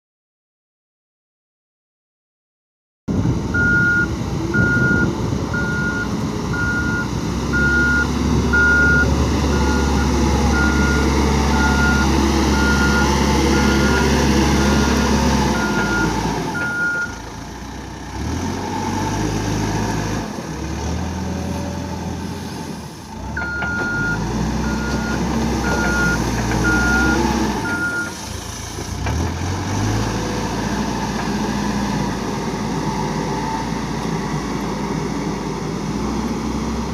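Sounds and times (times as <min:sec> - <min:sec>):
diesel engine under load: 0:03.1 - 0:36.9
backup alarm beeping: 0:03.6 - 0:15.0, 0:15.6 - 0:17.1, 0:23.4 - 0:28.1.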